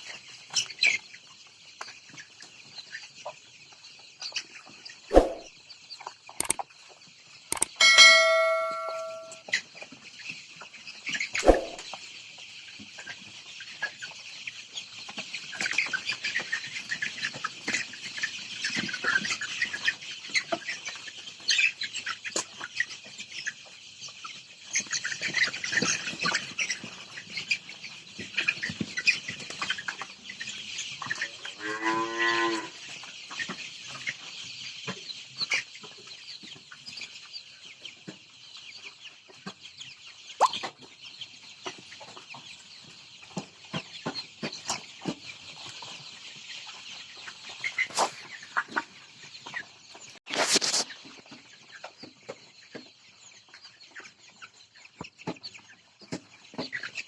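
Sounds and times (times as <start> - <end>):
chicks chirping and peeping: 0.0 - 31.6, 32.7 - 57.0.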